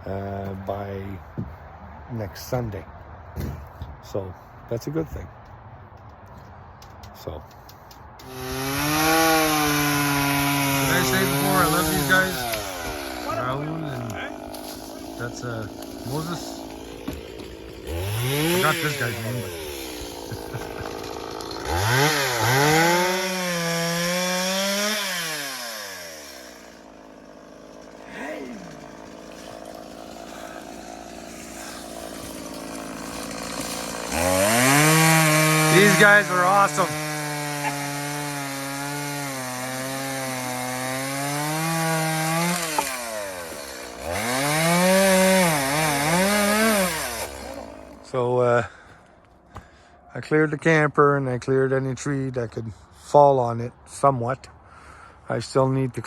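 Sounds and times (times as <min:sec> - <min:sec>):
chainsaw revving: 0:08.2 - 0:48.3.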